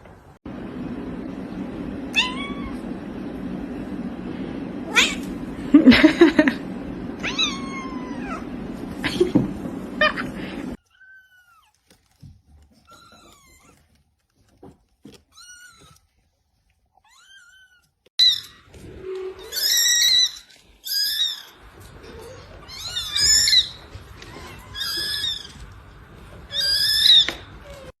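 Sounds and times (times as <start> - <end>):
cat meowing: 2.1 - 2.8, 4.9 - 5.3, 7.2 - 8.4.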